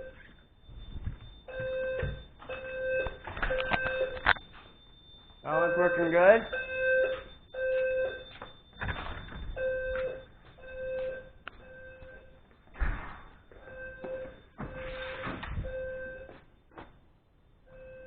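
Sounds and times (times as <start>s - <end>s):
fire alarm horn beeps: 0.0s - 12.4s, 13.4s - 16.6s, 17.6s - 18.0s
clunks and rustles: 0.2s - 4.7s, 8.3s - 10.2s, 12.7s - 15.7s.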